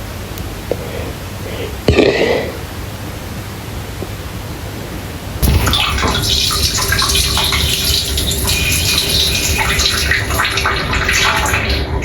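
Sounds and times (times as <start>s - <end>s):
water running: 5.4s - 12.0s.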